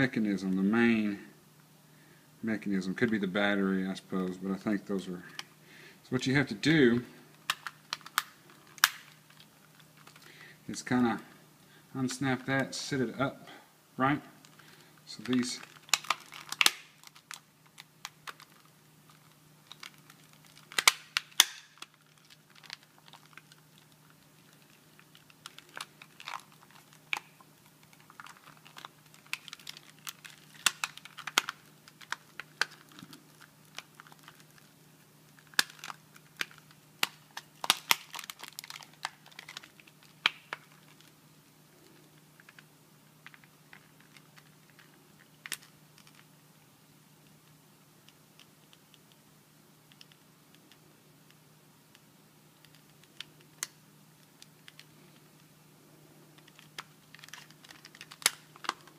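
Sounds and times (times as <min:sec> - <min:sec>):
plastic clicks and snaps: 0:07.4 - 0:10.3, 0:15.2 - 0:23.9, 0:24.5 - 0:34.7, 0:35.4 - 0:41.1, 0:42.4 - 0:46.3, 0:49.9 - 0:52.0, 0:52.6 - 0:53.8, 0:56.4 - 0:58.9.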